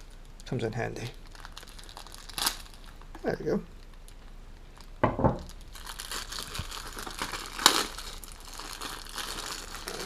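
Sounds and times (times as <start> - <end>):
packaging crinkling and rustling: 0.0 - 10.0
packaging being torn open: 1.2 - 3.1, 5.5 - 10.0.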